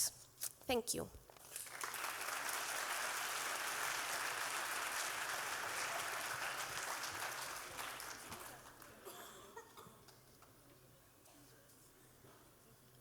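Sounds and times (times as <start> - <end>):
audience applauding: 1.5 - 9.0.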